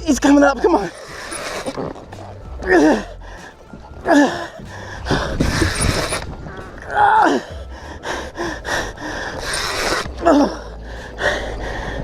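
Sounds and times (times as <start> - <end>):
man breathing hard: 4.3 - 5.9, 7.4 - 12.0.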